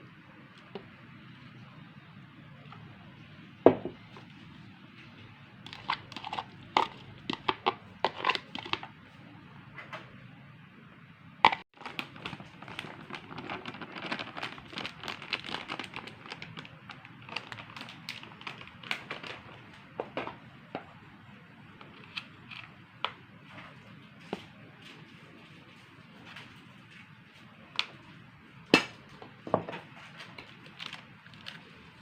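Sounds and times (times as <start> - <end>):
food crackling and rustling in bowl: 3.9 - 9.0, 11.4 - 20.5, 29.2 - 32.0.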